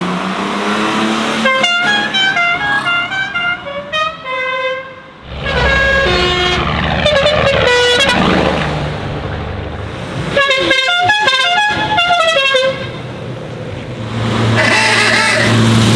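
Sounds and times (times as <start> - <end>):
musical car horns: 1.4 - 8.3, 10.3 - 13.2, 14.5 - 15.6
low rumble: 5.2 - 10.4.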